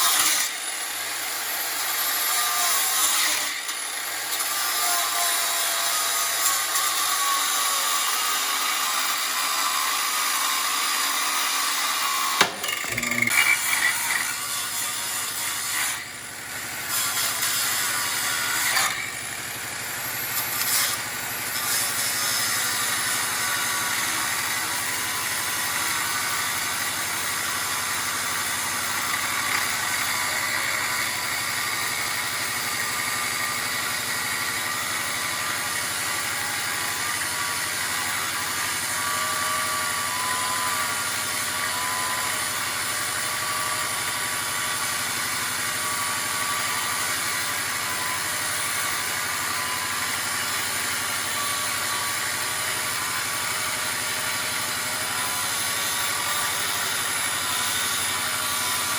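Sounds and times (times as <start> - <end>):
mechanical drone: 12.4 - 14.5.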